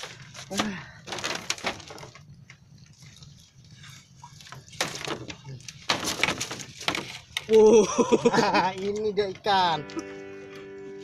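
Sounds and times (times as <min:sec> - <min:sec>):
sharp knocks and rustles: 0:00.0 - 0:07.5.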